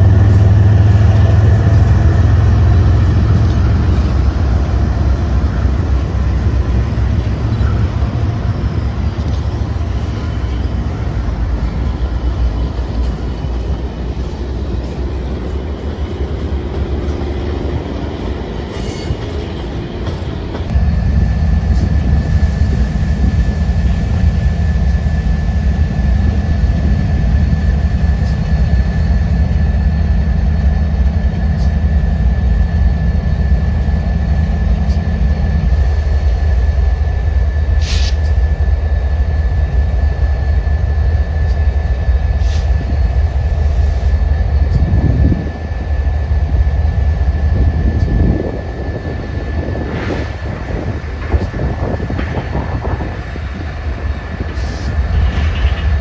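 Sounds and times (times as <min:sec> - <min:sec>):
train rumbling past: 0:00.0 - 0:56.0
thin steady whine: 0:20.7 - 0:56.0.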